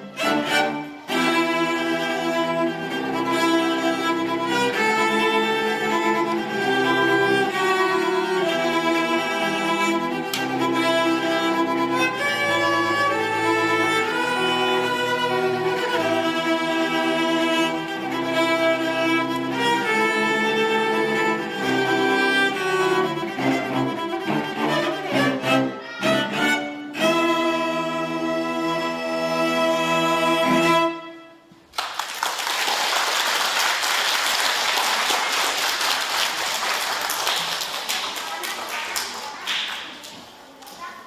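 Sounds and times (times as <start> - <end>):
string orchestra playing: 0.0 - 31.6
audience applauding: 31.7 - 40.2.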